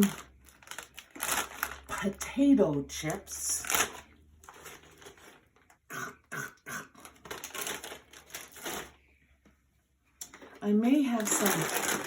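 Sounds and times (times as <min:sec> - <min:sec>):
potato chips crackling: 0:00.0 - 0:05.8, 0:07.0 - 0:09.0, 0:10.9 - 0:12.0.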